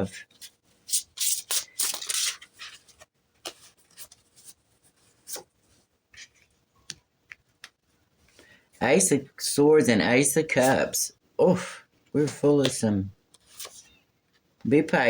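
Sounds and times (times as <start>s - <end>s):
cards sliding and rustling: 0.3s - 6.4s, 12.2s - 14.0s.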